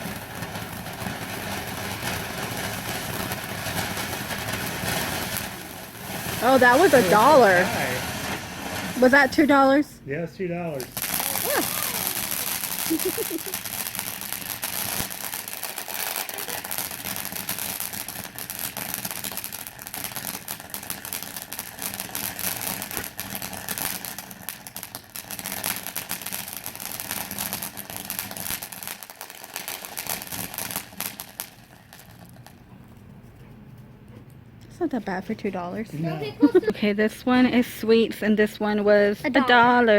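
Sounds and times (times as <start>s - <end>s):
firework fountain hissing and crackling: 0.0s - 32.7s, 34.7s - 39.9s.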